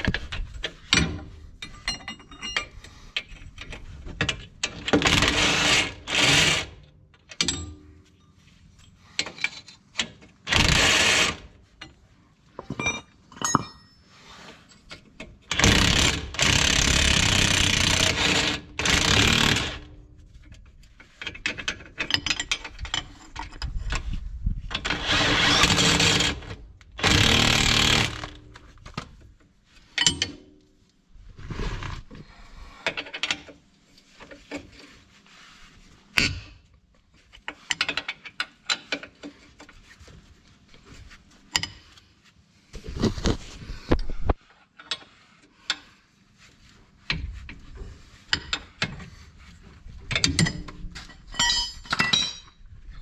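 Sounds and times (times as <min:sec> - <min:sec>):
power tool bursts: 0:27.0 - 0:28.4.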